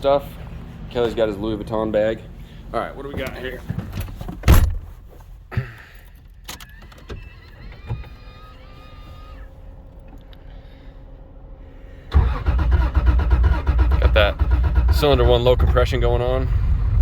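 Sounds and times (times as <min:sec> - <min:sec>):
faint steady hum: 0:00.0 - 0:12.4
car door shutting: 0:03.2 - 0:05.0
electric whining tones: 0:07.1 - 0:10.3.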